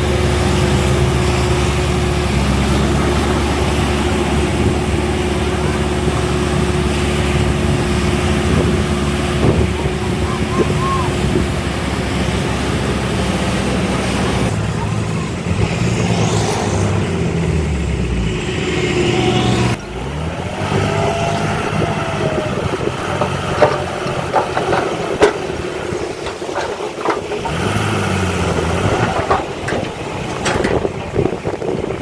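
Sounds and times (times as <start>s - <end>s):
heavy machinery diesel engines revving: 0.0s - 32.0s
sharp clanks and knocks: 22.7s - 31.5s.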